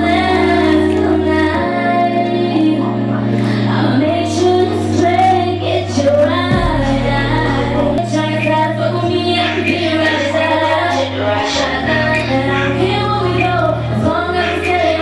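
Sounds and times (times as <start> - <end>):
backing track with deep bass: 0.0 - 15.0
woman singing: 0.0 - 15.0.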